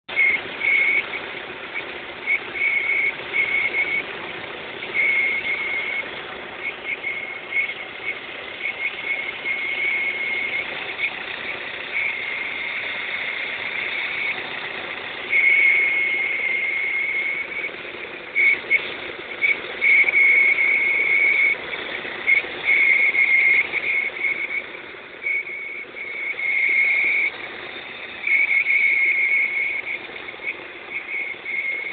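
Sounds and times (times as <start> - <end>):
engine hum: 0.1 - 31.9
high-pitched whistle: 0.1 - 31.9.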